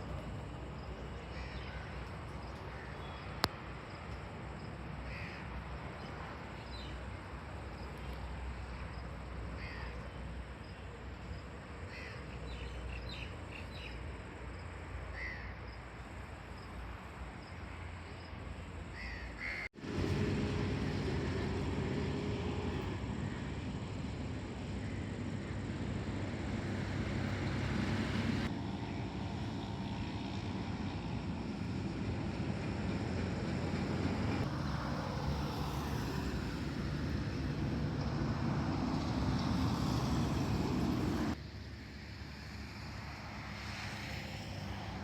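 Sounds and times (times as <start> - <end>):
crows cawing: 5.1 - 5.4, 9.6 - 9.9, 11.9 - 12.2, 15.2 - 15.5, 19.0 - 19.7.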